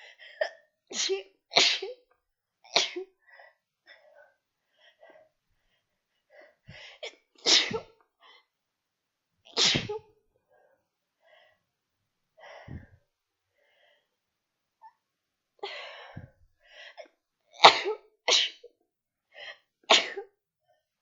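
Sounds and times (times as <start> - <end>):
woman sneezing: 7.5 - 7.9, 9.6 - 10.0.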